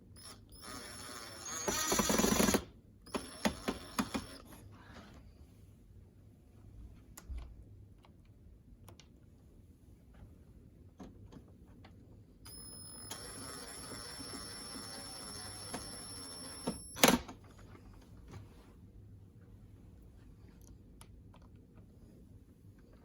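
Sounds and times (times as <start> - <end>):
power screwdriver whining: 0.2 - 4.4, 12.5 - 17.2.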